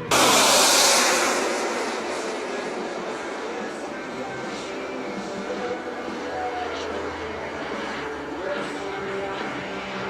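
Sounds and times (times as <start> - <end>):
loud burst of rushing noise: 0.0 - 6.5.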